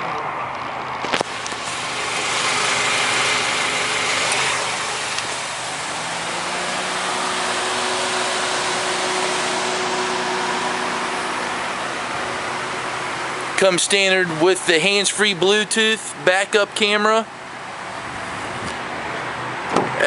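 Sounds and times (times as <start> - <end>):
car engine idling: 0.0 - 20.0
loud rushing: 1.2 - 14.2.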